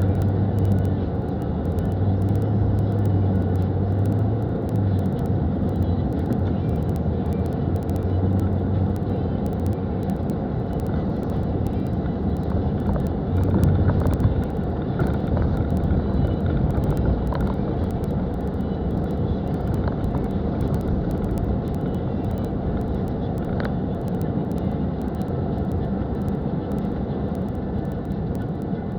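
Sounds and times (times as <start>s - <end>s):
car engine drone: 0.0s - 28.9s.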